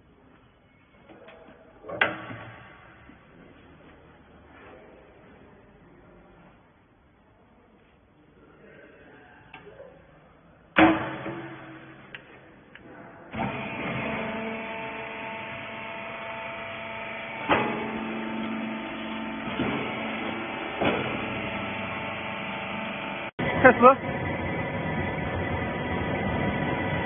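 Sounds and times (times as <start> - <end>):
loud metallic bang: 10.8 - 12.1
machine humming: 13.3 - 27.0.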